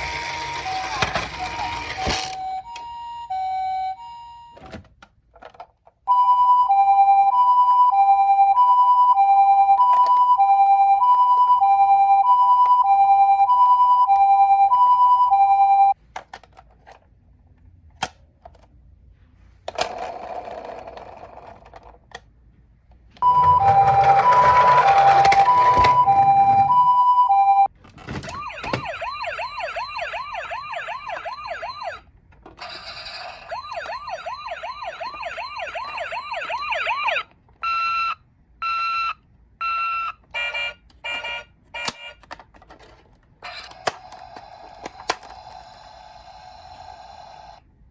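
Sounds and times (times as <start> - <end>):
warbling toy siren: 0.0 - 4.6, 23.2 - 27.4, 28.3 - 32.0, 32.6 - 42.1
two-tone toy siren: 0.0 - 4.7, 6.1 - 16.0, 23.2 - 27.7, 28.3 - 32.0, 32.6 - 42.3.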